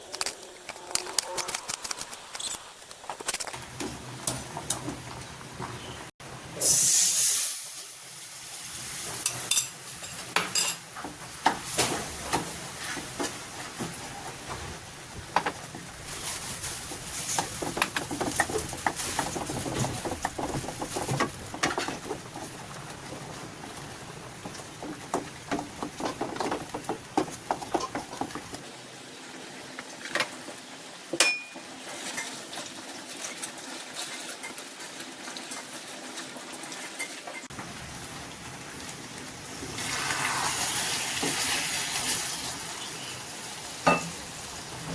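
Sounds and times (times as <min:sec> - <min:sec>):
food frying in a pan: 0:03.6 - 0:44.9
loud burst of sizzling: 0:06.5 - 0:10.0, 0:39.3 - 0:44.9.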